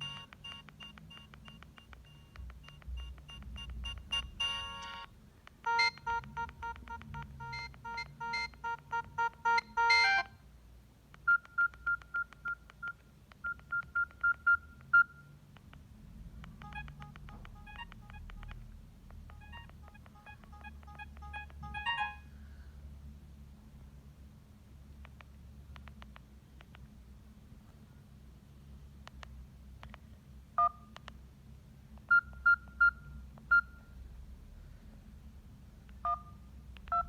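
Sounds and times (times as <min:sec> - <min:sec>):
phone electronic ringtones: 0:00.0 - 0:10.3, 0:16.6 - 0:18.5, 0:19.3 - 0:22.3, 0:36.0 - 0:37.0.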